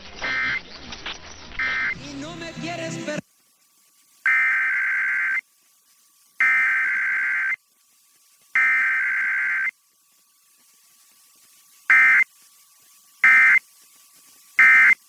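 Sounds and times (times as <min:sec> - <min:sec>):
screeching digital data tones: 0:00.2 - 0:02.0, 0:04.2 - 0:05.4, 0:06.4 - 0:07.6, 0:08.6 - 0:09.8, 0:11.9 - 0:12.3, 0:13.2 - 0:13.6, 0:14.6 - 0:15.0.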